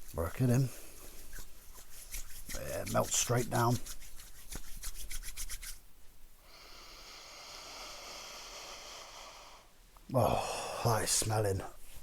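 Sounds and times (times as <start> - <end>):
hands brushing through a beard: 0.0 - 5.9.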